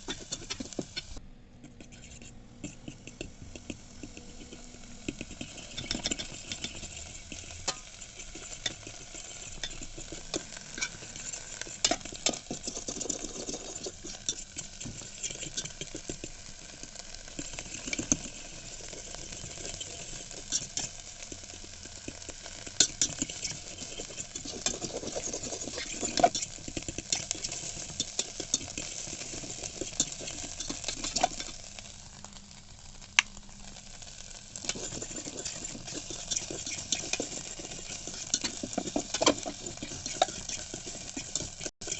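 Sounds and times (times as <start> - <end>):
spoon scraping eggs: 0.0 - 31.9, 34.0 - 41.9
eggs sizzling: 0.0 - 41.9.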